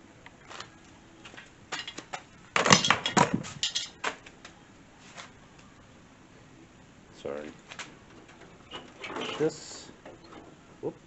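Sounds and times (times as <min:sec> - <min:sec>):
objects clattering and knocking: 0:01.7 - 0:04.2, 0:08.1 - 0:10.6.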